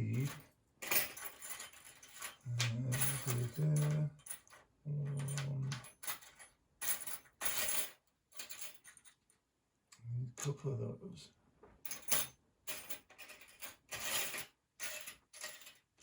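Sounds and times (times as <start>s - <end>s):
small metal parts clinking: 0.1s - 9.3s, 11.9s - 16.0s
man humming: 2.5s - 4.2s, 4.9s - 5.8s.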